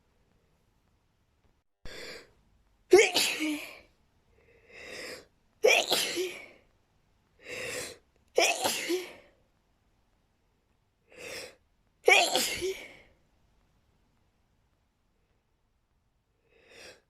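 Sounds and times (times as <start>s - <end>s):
person sneezing: 2.9s - 3.8s, 5.6s - 6.6s, 8.4s - 9.3s, 12.1s - 13.1s.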